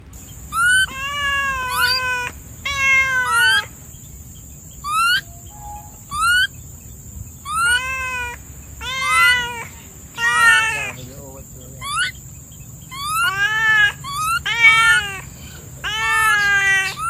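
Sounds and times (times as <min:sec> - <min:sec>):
animal meow-like cries: 0:00.4 - 0:03.8, 0:04.8 - 0:06.6, 0:07.4 - 0:11.0, 0:12.9 - 0:17.0.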